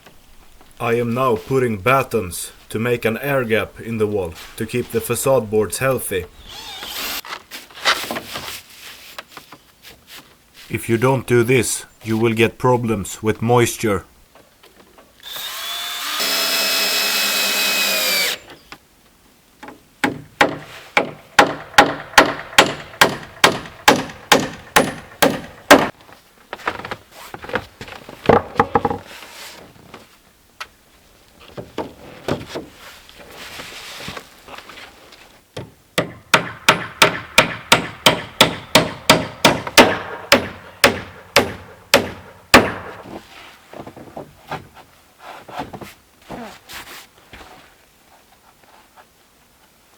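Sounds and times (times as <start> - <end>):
cordless drill running: 6.4 - 7.2, 15.2 - 18.5
rapid hammer blows on wood: 20.1 - 26.0, 36.0 - 43.0.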